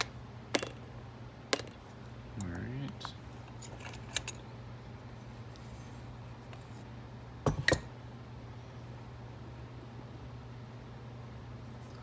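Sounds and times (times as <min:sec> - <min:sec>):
faint steady hum: 0:00.0 - 0:12.0
metallic clinks of lock picking tools: 0:03.5 - 0:04.4.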